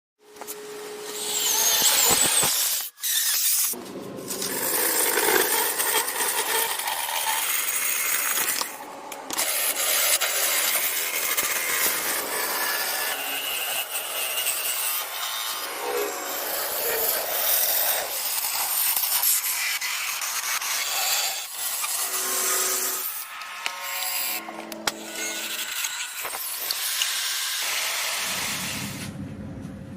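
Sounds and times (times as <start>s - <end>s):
hand sawing and rasping wood: 1.2s - 29.0s.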